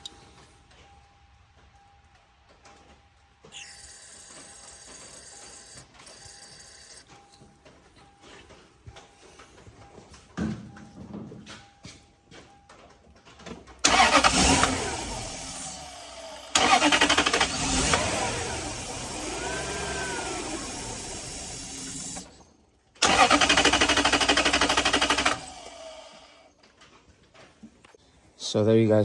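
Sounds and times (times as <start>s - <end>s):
car engine cranking and firing up: 13.8s - 26.5s.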